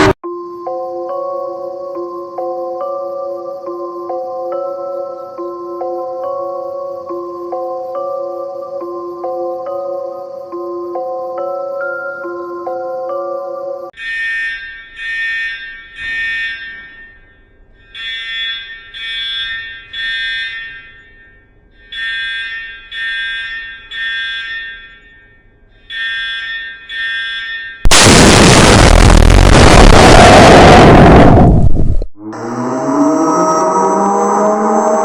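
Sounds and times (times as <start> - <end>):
loud blast of harsh noise: 27.9 - 32.0.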